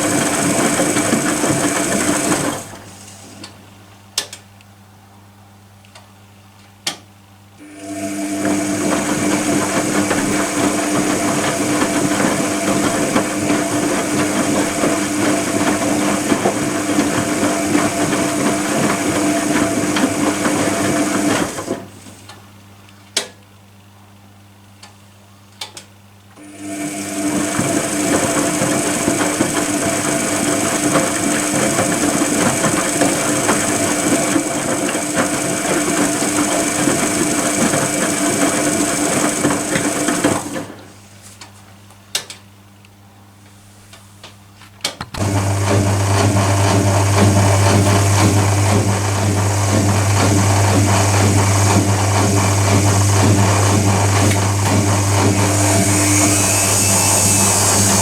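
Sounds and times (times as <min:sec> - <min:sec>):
washing machine motor whine: 0:00.0 - 0:03.1, 0:07.6 - 0:22.0, 0:26.4 - 0:41.0, 0:45.2 - 0:58.0
washing machine clicks: 0:44.8 - 0:56.2.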